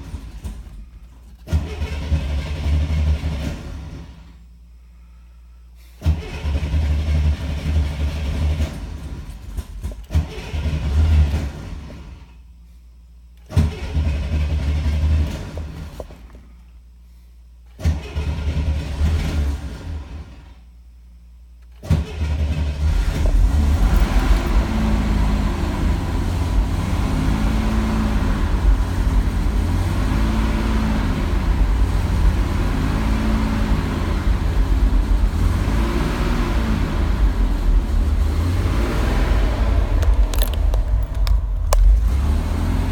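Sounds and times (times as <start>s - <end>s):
engine starter cranking: 0.0s - 4.2s, 6.0s - 12.1s, 13.4s - 16.4s, 17.7s - 20.4s, 21.6s - 29.6s, 37.2s - 42.9s
engine running and revving: 1.5s - 4.3s, 6.0s - 12.2s, 17.9s - 20.5s, 21.8s - 42.9s.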